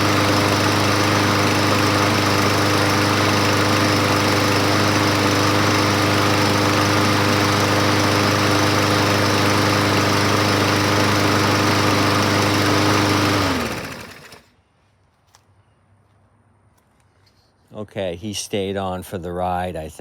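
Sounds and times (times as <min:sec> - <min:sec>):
engine winding down: 0:00.0 - 0:14.5
lawn mower engine running: 0:00.0 - 0:14.5.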